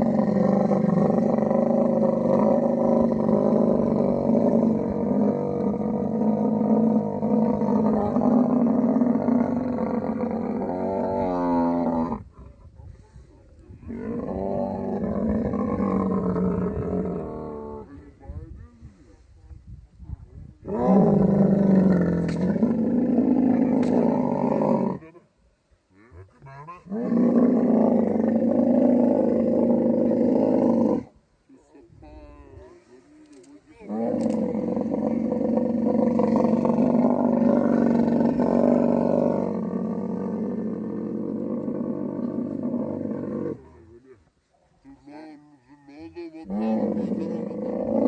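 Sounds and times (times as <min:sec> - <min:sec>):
camel roaring: 0:00.0 - 0:12.3, 0:20.7 - 0:25.0, 0:26.1 - 0:31.1, 0:33.8 - 0:43.8, 0:46.5 - 0:48.0.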